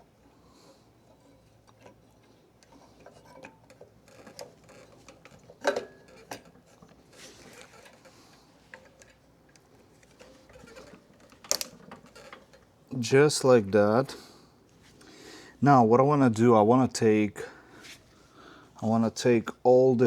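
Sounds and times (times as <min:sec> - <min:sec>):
small parts clicking and knocking: 0:02.6 - 0:12.8.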